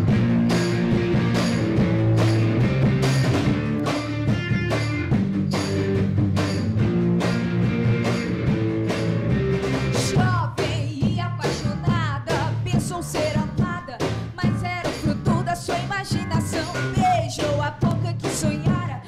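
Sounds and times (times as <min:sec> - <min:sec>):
live rock band playing: 0:00.0 - 0:19.0
singer singing: 0:10.0 - 0:19.0.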